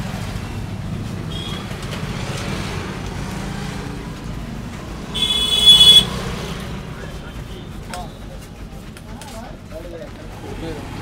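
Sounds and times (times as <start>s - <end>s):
road traffic rumble: 0.0s - 11.0s
high-pitched vehicle horn: 5.1s - 6.2s.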